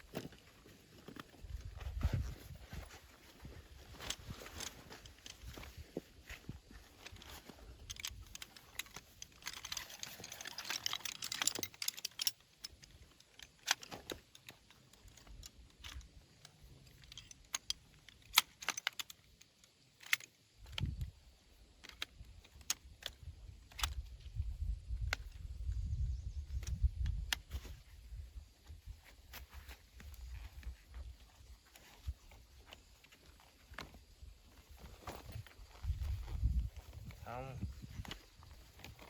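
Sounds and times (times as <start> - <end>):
dense rustle: 0.0 - 18.9, 27.4 - 39.0.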